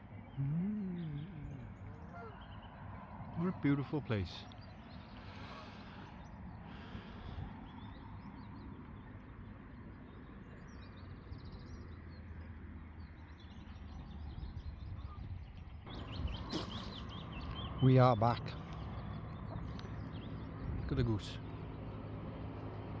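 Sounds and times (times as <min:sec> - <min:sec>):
low outdoor background rumble: 0:00.0 - 0:23.0
small birds chirping: 0:00.0 - 0:23.0.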